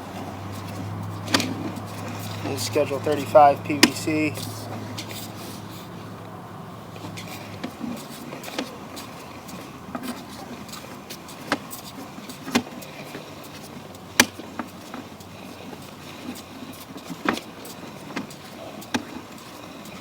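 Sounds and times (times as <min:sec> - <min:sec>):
sharp clicks and knocks: 0:00.6 - 0:05.3.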